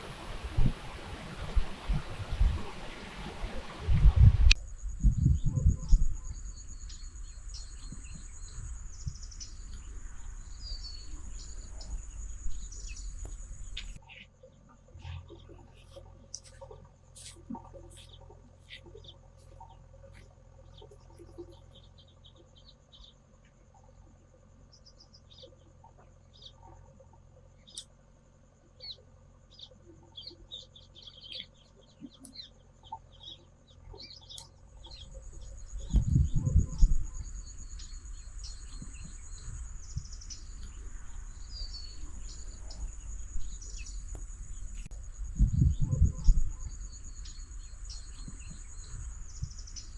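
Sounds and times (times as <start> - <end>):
low rumble: 0.0 - 14.0, 33.7 - 49.9
high insect drone: 0.0 - 14.2, 32.3 - 49.9
small birds chirping: 0.0 - 49.9.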